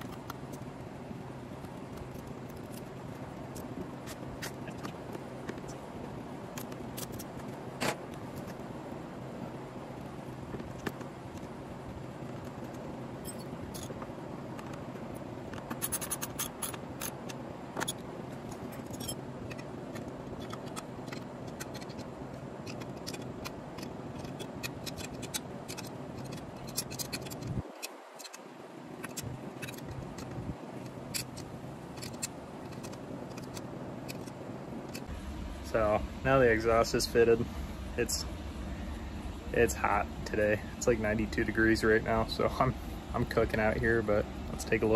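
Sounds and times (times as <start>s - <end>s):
steady background hiss: 0.0s - 44.9s
hand tools clicking and scraping: 1.6s - 5.8s, 6.5s - 8.6s, 12.4s - 14.0s, 15.4s - 35.1s.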